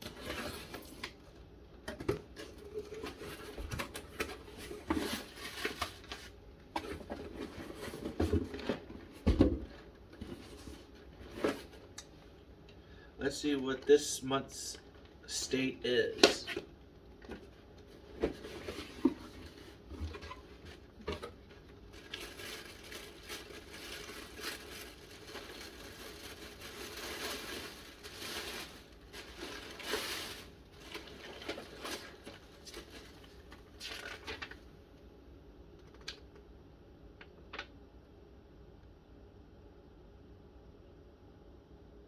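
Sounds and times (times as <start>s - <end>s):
packaging rustling and crinkling: 0.0s - 1.4s, 2.3s - 12.0s, 17.2s - 34.7s.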